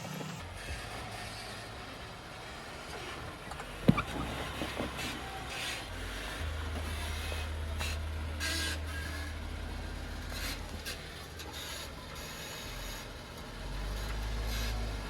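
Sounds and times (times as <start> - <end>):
engine drone: 0.0 - 15.0
tyres scraping on rock: 2.9 - 9.3.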